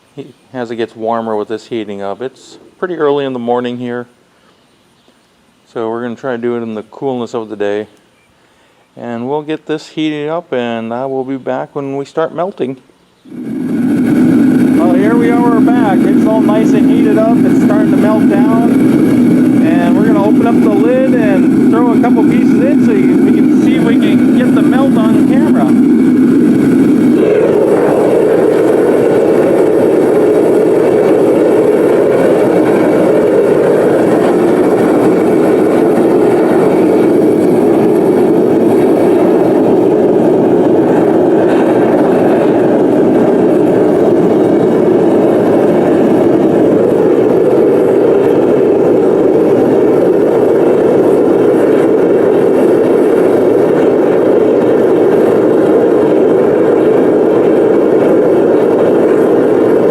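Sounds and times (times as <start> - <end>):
gas burner rushing: 13.3 - 59.9.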